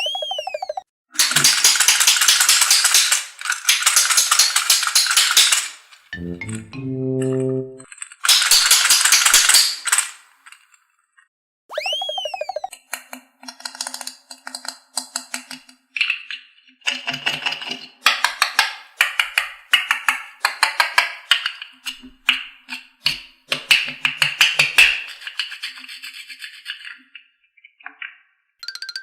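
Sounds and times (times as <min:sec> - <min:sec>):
rapid clicks and knocks: 0:01.2 - 0:05.7.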